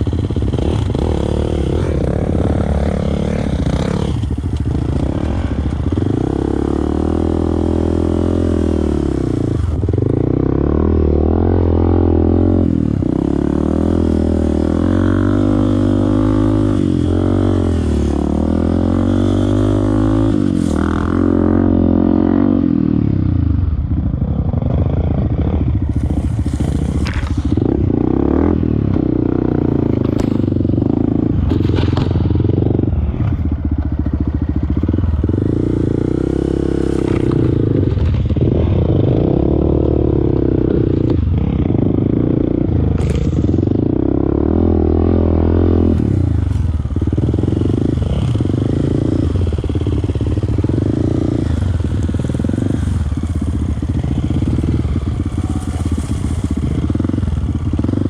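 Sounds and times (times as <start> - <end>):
motorcycle engine revving: 0.0 - 58.0
motorcycle knocks and rattles: 25.7 - 28.0, 28.8 - 35.5, 42.8 - 44.0.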